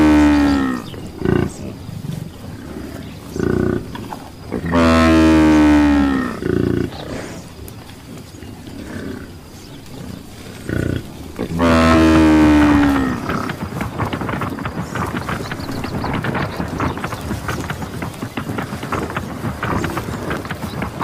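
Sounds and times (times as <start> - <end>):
buffalo bellowing: 0.0 - 21.0
buffalo grunt: 0.0 - 21.0
rapid clicking and knocking: 11.4 - 21.0.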